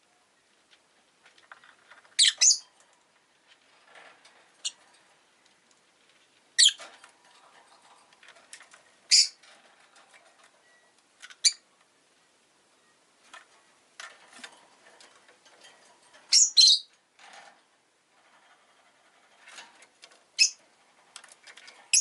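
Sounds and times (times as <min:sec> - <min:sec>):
faint ticks and rustling: 0:00.0 - 0:22.0
lovebird chirping: 0:02.2 - 0:02.7, 0:06.6 - 0:06.8, 0:09.1 - 0:09.4, 0:10.6 - 0:11.6, 0:16.3 - 0:16.9, 0:20.4 - 0:20.6.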